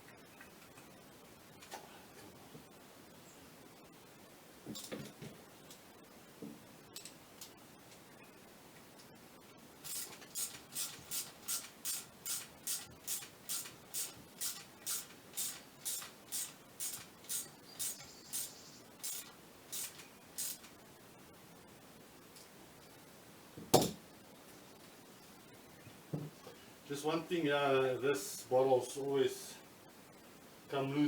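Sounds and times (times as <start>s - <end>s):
ratchet wrench rasping: 9.9s - 20.7s.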